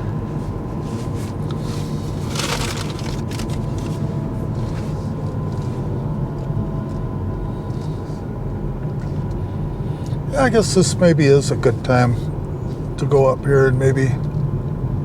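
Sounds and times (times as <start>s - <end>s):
road and tyre rumble in car: 0.0s - 15.0s
brief rustle: 1.0s - 4.0s.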